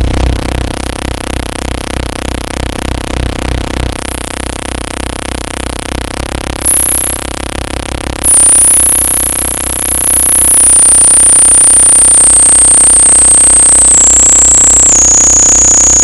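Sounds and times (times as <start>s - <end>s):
dense droning hum: 0.0s - 16.0s
fast low pulsing throb: 0.0s - 16.0s
piercing high whistle: 8.2s - 16.0s.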